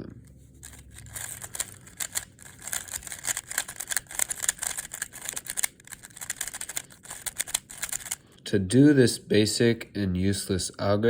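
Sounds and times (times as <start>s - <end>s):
puzzle cube plastic clicks: 0.6s - 8.2s.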